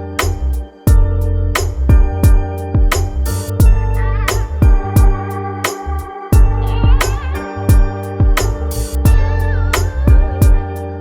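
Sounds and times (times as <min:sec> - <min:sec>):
sustained bass: 0:00.0 - 0:11.0
drum beat: 0:06.4 - 0:09.3.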